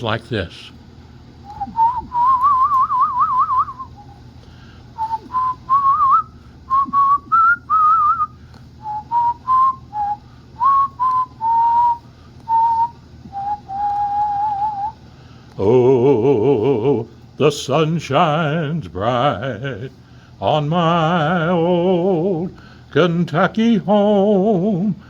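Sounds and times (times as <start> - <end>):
man whistling a tune: 1.5 - 4.2, 5.0 - 15.0.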